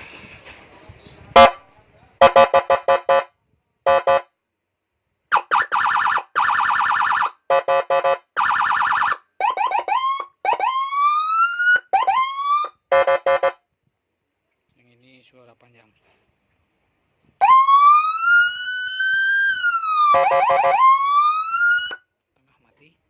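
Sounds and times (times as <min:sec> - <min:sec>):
electronic siren: 0:05.3 - 0:13.6, 0:17.4 - 0:22.1.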